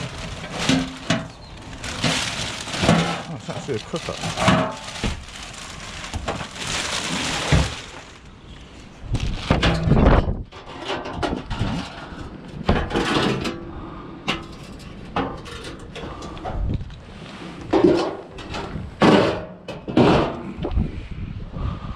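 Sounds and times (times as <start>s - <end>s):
scrap knocking and clattering: 0.0s - 5.4s, 17.6s - 20.4s.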